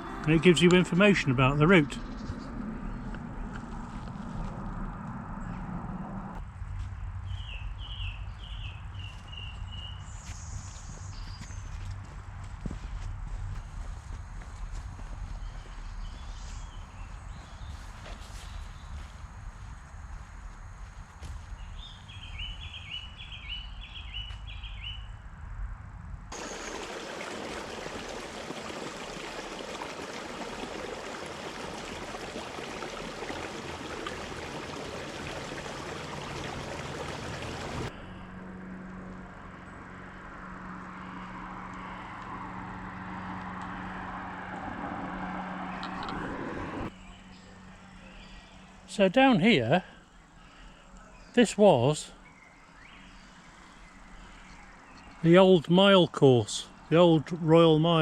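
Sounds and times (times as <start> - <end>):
low rumble: 0.0 - 6.6
low hum: 0.0 - 6.7.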